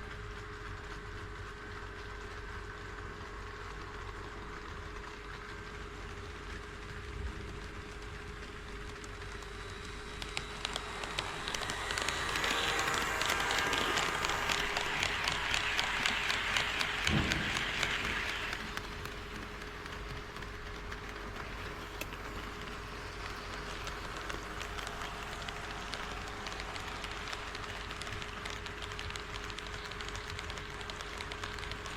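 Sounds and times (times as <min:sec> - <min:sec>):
model train wheels clicking: 0:07.6 - 0:31.9.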